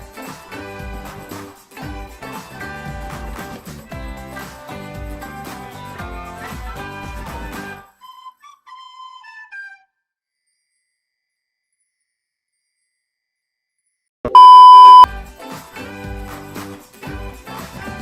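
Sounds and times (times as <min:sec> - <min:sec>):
music: 0:00.0 - 0:10.9, 0:15.1 - 0:18.0
loud electronic beep: 0:14.3 - 0:15.1.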